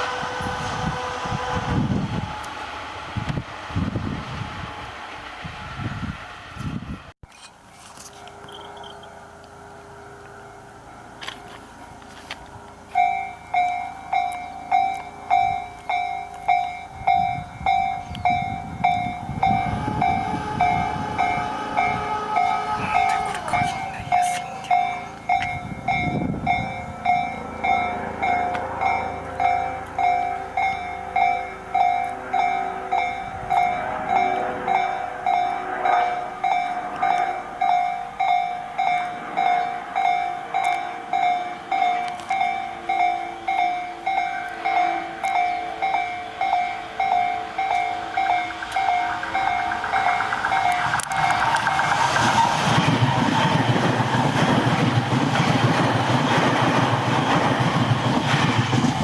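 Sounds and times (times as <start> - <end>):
rumble of passing vehicles: 0.0 - 59.0
level crossing two-tone bell: 21.3 - 32.6.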